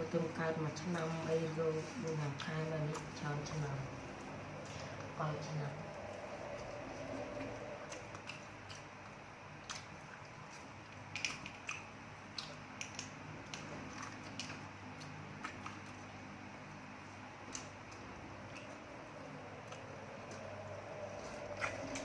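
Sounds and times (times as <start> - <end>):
low steady hum: 0.0 - 22.0
person eating with crunches: 5.8 - 22.0.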